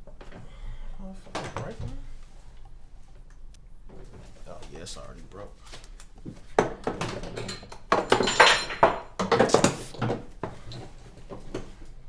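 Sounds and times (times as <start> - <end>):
metal tools clanking: 7.2 - 9.8.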